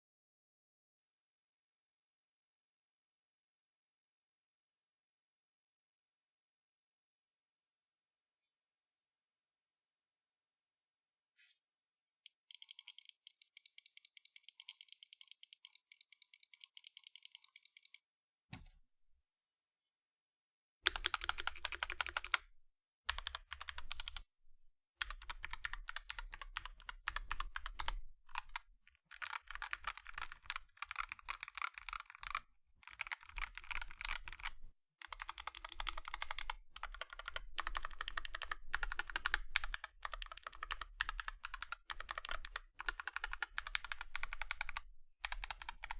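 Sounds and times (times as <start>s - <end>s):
mechanical keyboard typing: 12.3s - 18.0s, 20.9s - 22.5s, 23.1s - 24.3s, 25.0s - 45.9s.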